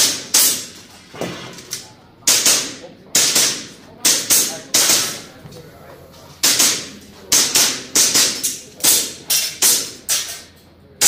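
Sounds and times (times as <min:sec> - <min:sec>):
airsoft pistol shots: 0:00.0 - 0:00.7, 0:02.2 - 0:05.2, 0:06.4 - 0:09.9.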